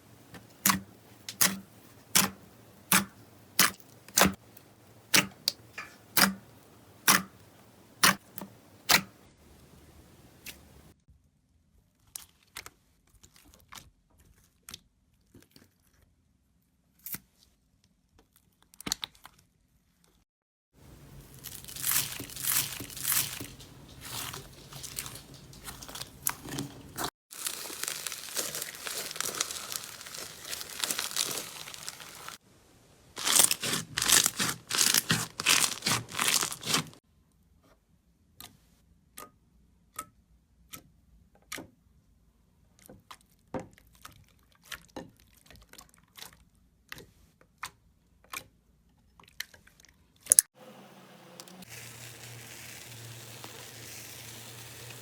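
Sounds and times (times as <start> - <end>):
slime crackling and popping: 0.5 - 4.4, 20.9 - 32.4, 33.2 - 37.0, 51.6 - 55.0
slime squeezed and stretched: 21.2 - 32.4, 33.2 - 37.0.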